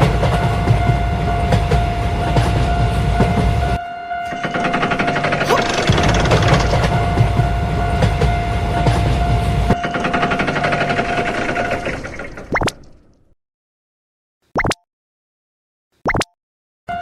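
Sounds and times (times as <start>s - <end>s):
train rumble and wheel clatter: 0.0s - 12.6s
steady high tone: 0.4s - 11.8s.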